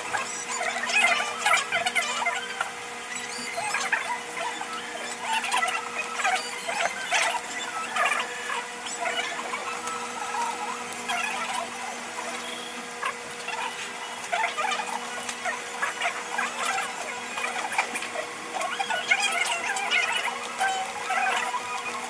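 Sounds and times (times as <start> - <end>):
rapid high squeaks and clicks: 0.0 - 22.0.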